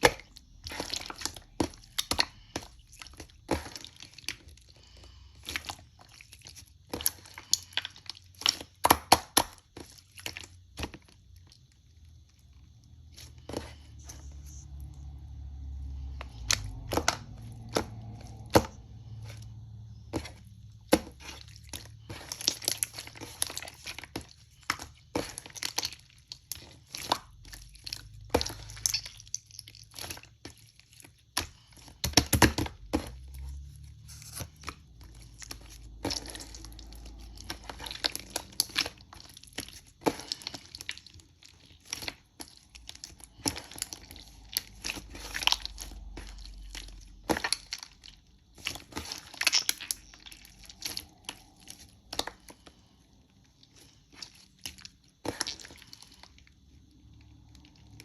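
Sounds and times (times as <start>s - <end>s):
slime squished by hand: 12.9s - 58.0s.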